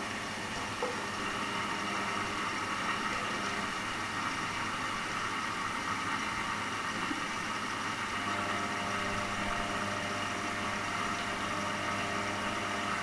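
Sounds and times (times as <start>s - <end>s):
washing machine humming: 0.0s - 13.0s.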